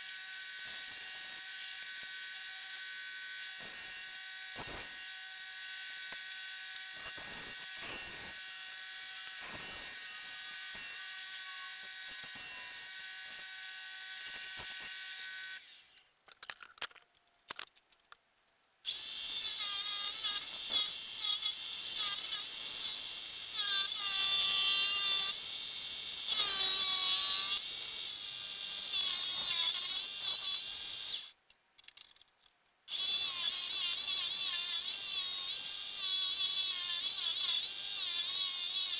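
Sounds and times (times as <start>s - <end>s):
power saw cutting wood: 18.9s - 31.3s, 32.9s - 38.9s.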